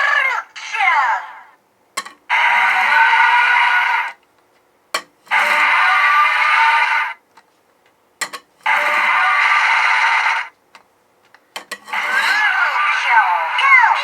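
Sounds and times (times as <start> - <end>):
electronic toy sound clip: 2.3 - 4.2, 5.3 - 7.2, 8.7 - 10.5, 11.9 - 14.0.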